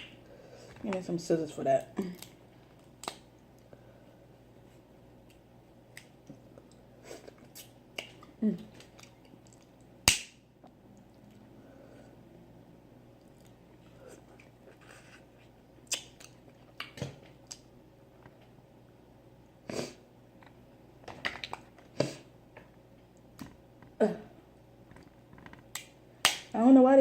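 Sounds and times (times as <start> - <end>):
crab shell cracking and snapping: 2.2 - 3.3
chewing and mouth smacking: 5.2 - 9.9, 13.2 - 17.7.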